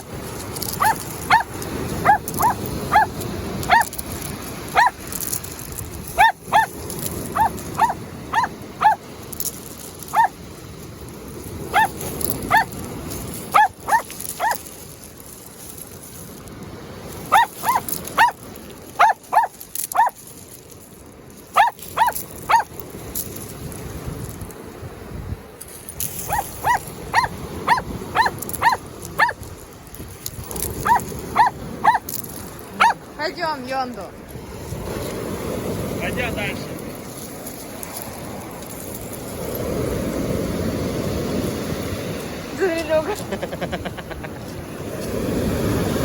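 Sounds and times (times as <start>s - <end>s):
dog barking in high yaps: 0.6s - 4.0s, 4.6s - 5.1s, 6.0s - 9.0s, 10.0s - 10.4s, 11.7s - 12.8s, 13.4s - 14.7s, 17.2s - 20.2s, 21.5s - 22.8s, 26.2s - 29.6s, 30.5s - 33.1s.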